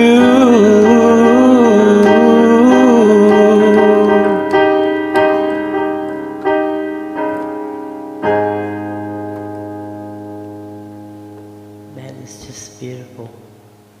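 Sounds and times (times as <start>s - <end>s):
piano chords ringing: 0.0s - 14.0s.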